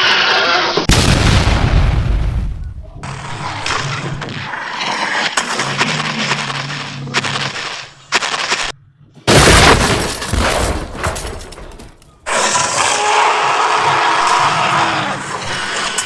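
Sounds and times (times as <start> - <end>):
debris shattering: 0.8 - 16.0
loud crash with deep boom: 0.9 - 4.3, 9.3 - 11.6.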